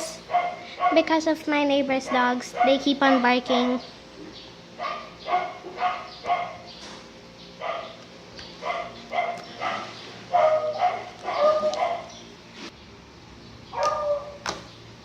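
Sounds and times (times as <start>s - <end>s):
dogs barking: 0.2s - 1.2s, 1.9s - 3.9s, 4.7s - 6.9s, 7.5s - 12.3s, 13.7s - 14.5s.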